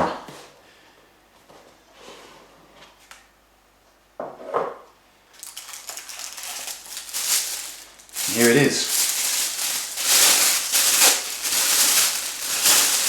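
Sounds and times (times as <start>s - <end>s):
packaging rustling and scraping: 5.4s - 13.0s.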